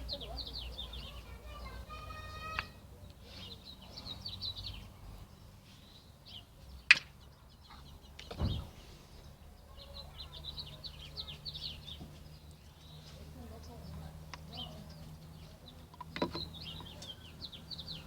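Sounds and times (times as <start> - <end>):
small birds chirping: 0.0 - 18.0
dull thump: 8.3 - 8.8.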